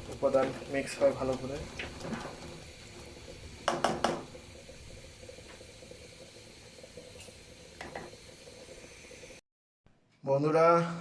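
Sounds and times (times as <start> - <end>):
faint simmering: 0.0 - 9.4
spatula knocking against pan: 3.6 - 4.3.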